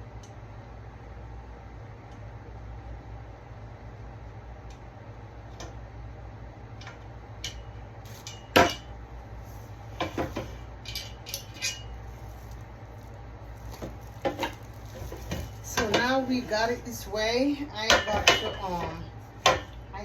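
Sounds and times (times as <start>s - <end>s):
knocks and clinks of furniture parts: 6.8s - 8.9s, 10.0s - 12.6s, 13.6s - 16.7s, 17.9s - 19.8s.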